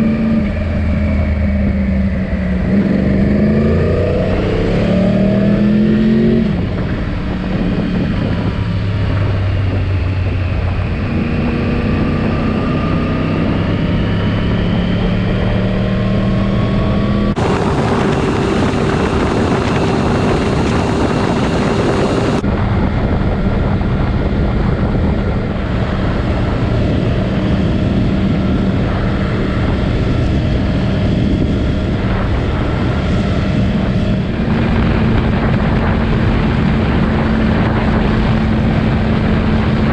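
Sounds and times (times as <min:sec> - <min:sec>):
loud rushing hiss: 0:17.4 - 0:22.4
motorcycle engine running: 0:17.4 - 0:22.4.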